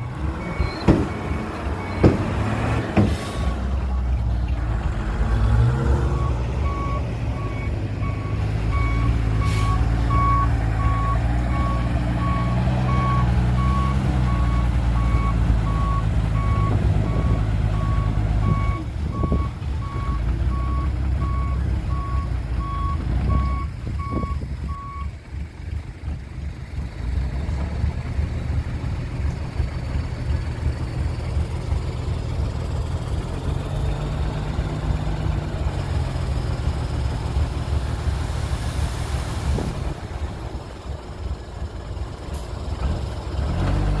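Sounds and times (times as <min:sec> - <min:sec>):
reversing alarm beeping: 0:00.0 - 0:02.2, 0:06.1 - 0:25.1
diesel engine running: 0:00.0 - 0:44.0.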